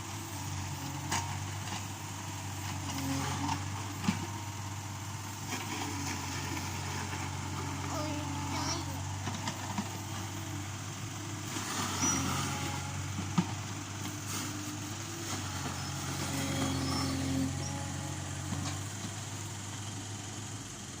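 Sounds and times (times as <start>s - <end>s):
diesel engine idling: 0.0s - 21.0s.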